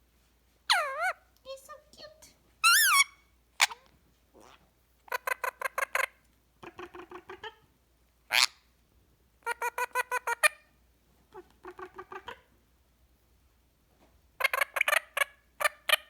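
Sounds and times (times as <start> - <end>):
parrot rising squeak: 2.6 - 3.1.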